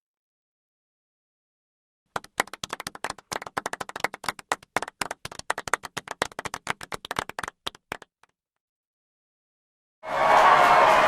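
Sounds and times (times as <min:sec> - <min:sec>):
people applauding: 0:02.1 - 0:08.3.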